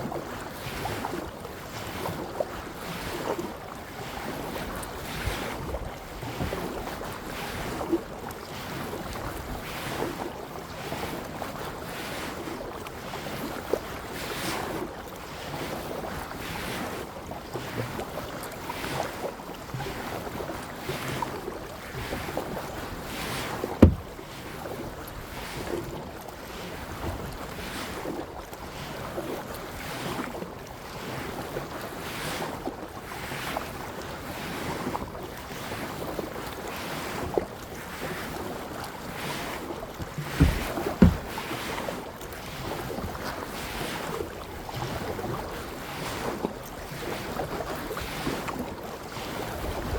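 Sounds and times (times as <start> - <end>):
paddle splashing water: 0.7 - 10.2, 17.5 - 30.4, 36.0 - 49.9
sharp thump: 23.8 - 24.1, 40.0 - 41.4.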